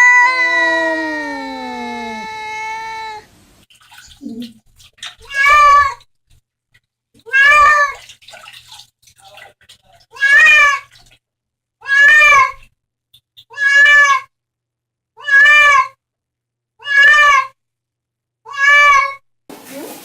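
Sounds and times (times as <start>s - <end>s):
cat meowing: 0.0s - 3.3s, 5.2s - 6.0s, 7.2s - 8.0s, 10.2s - 10.9s, 11.8s - 12.6s, 13.5s - 14.3s, 15.2s - 16.0s, 16.8s - 17.6s, 18.5s - 19.2s.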